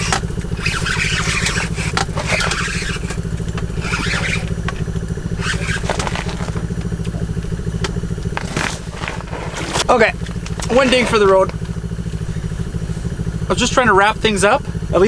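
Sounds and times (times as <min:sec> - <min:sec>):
scraping and rustling: 0:00.0 - 0:11.6
small engine idling: 0:00.0 - 0:15.0.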